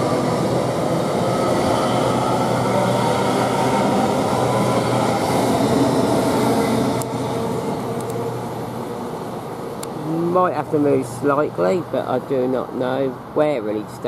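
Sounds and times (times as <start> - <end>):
electric train pulling away: 0.0 - 10.0.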